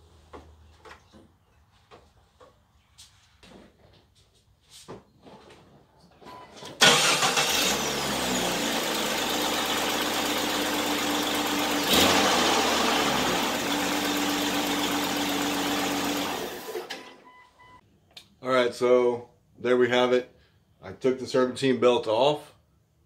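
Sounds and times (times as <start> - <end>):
car engine starting and idling: 6.8 - 17.2.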